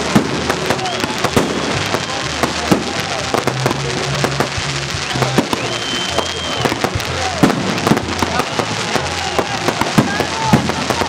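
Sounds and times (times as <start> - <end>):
fireworks bangs and crackling: 0.0 - 11.0
high steady whistle: 5.5 - 6.7.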